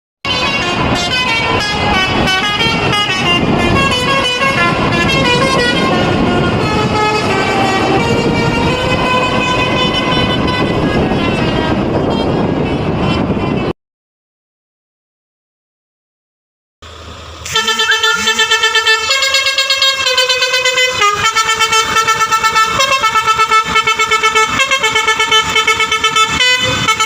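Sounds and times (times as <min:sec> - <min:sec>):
lorry horn playing tune: 0:00.2 - 0:12.4, 0:17.4 - 0:27.0
engine and road noise: 0:00.2 - 0:13.7, 0:16.8 - 0:27.0.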